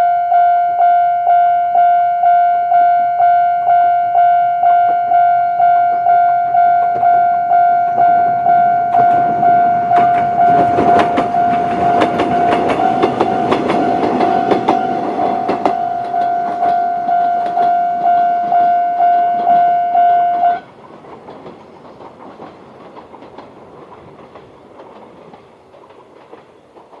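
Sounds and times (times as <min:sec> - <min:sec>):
level crossing warning bell: 0:00.0 - 0:20.7
train wheels clicking on rail joints: 0:05.9 - 0:27.0.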